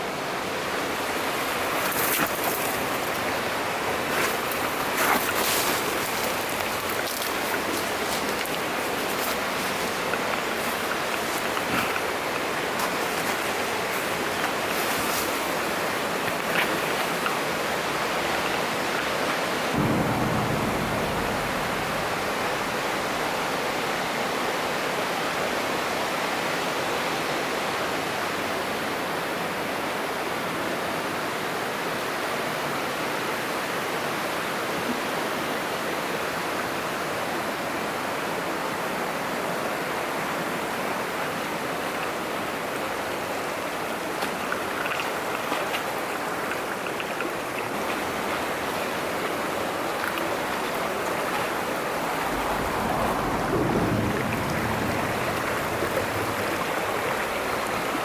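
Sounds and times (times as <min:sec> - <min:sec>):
rushing mountain stream: 0:00.0 - 0:58.0
low rumble: 0:19.8 - 0:24.4, 0:51.8 - 0:58.0.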